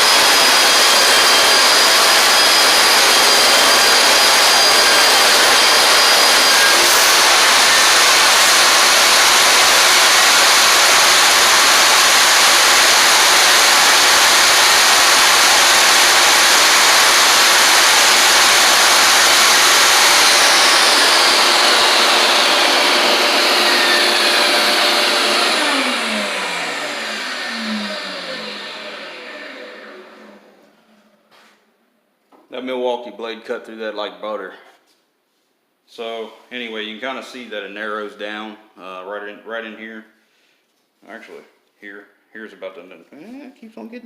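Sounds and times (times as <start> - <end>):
dust collector running: 0.0 - 30.7
table saw whirring: 0.0 - 31.3.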